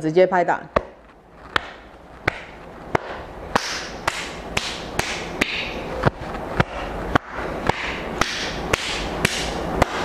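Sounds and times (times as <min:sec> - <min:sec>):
palm slapping skin: 0:01.5 - 0:05.7.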